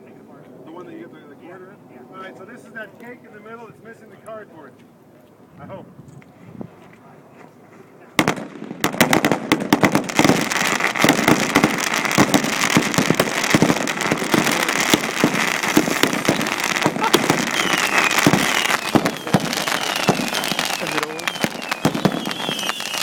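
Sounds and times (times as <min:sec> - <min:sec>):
rapid crackle of firework reports: 0:08.2 - 0:23.0
falling firework whistles: 0:08.3 - 0:23.0
steady high whistle: 0:17.3 - 0:23.0.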